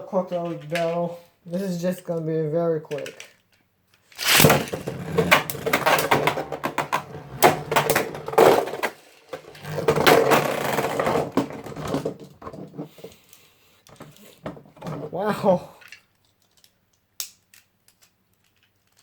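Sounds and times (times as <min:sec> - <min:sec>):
spinning tops whirring and clashing: 0:04.2 - 0:06.1.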